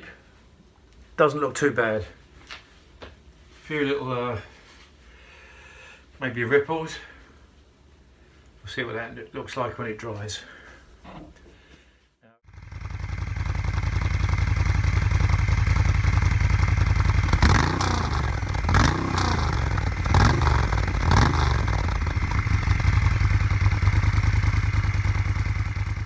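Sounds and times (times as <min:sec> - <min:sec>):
motorcycle engine idling and revving: 0:12.4 - 0:26.0.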